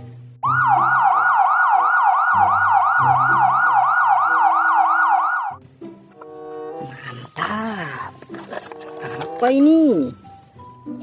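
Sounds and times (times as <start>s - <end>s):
background music: 0.0s - 11.0s
police siren yelping: 0.4s - 5.6s.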